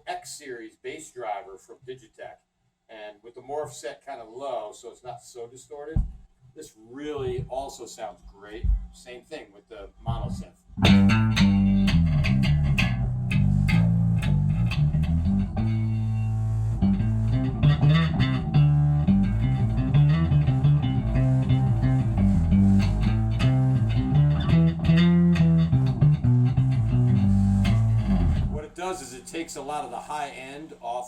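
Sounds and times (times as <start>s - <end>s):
distorted synth bass notes: 10.1s - 28.7s.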